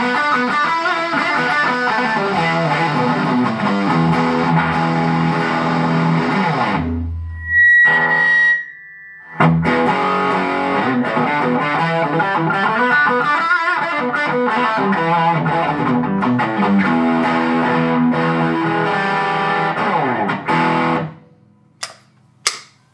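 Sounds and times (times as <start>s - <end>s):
distorted electric guitar: 0.0s - 21.2s.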